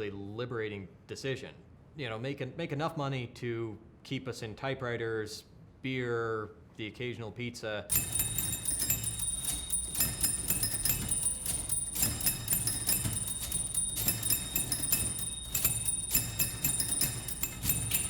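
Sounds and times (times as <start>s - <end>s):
typewriter carriage bells ringing: 7.9s - 18.0s
typewriter key clatter: 7.9s - 18.0s.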